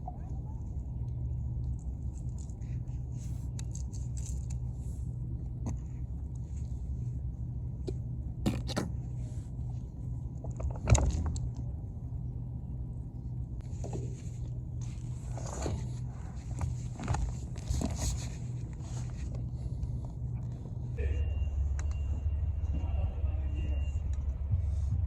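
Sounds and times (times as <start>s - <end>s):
light clicks and scrapes: 1.0s - 7.0s, 13.6s - 21.0s
excavator diesel engine running: 19.5s - 25.0s.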